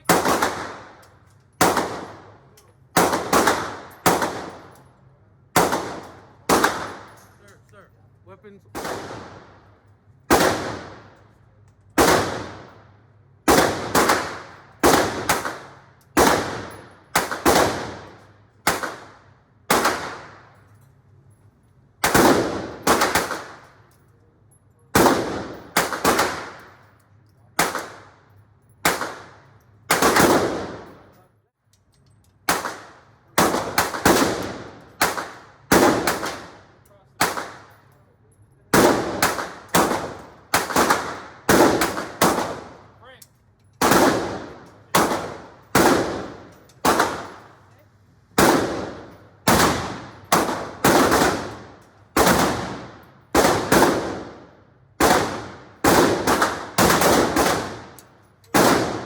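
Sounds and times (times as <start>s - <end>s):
gunshots with echo: 28.8s - 31.1s.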